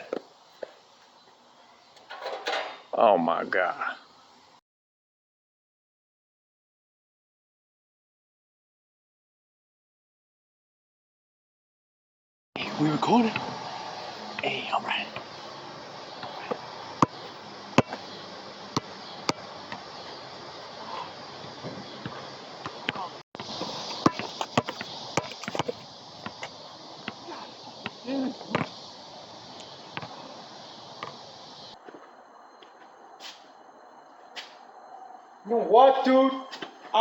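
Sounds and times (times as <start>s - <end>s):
steady hiss: 12.6s - 32.4s.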